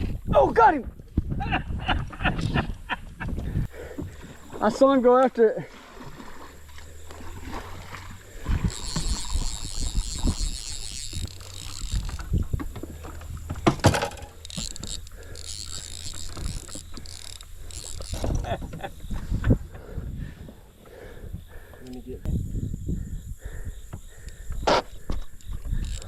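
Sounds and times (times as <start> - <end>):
steady low hum: 3.4 - 26.0
high rapid whirring: 6.3 - 18.7.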